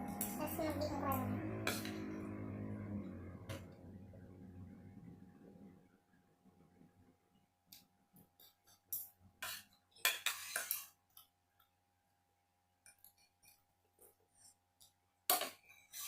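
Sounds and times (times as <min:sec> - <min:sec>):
cutlery clinking against dishes: 0:08.4 - 0:10.9, 0:15.3 - 0:16.0.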